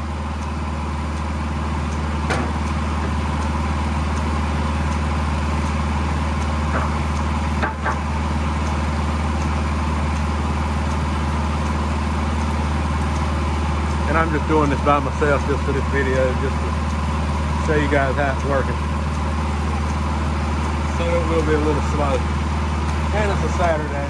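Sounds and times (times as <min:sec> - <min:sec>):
tractor engine drone: 0:00.0 - 0:24.0
sharp clicks and knocks: 0:01.9 - 0:04.3, 0:06.4 - 0:10.3.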